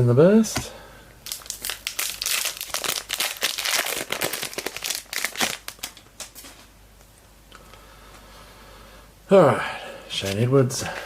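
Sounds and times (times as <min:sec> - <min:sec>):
foil wrapper crinkling and tearing: 0:01.2 - 0:06.6.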